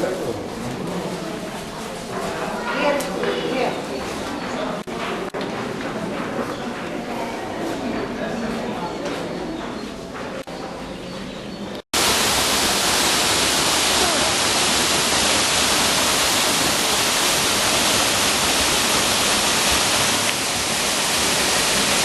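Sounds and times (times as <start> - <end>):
waterfall rushing: 12.0 - 22.0.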